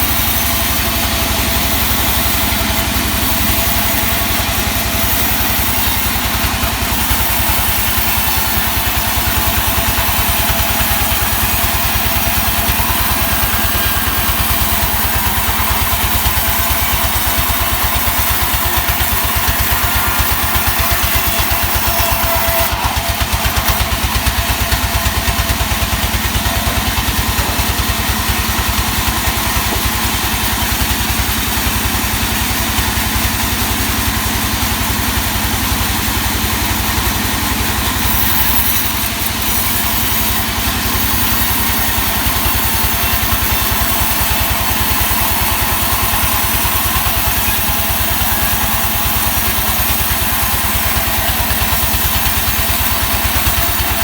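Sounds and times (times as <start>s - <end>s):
engine chugging steadily: 0.0s - 54.0s.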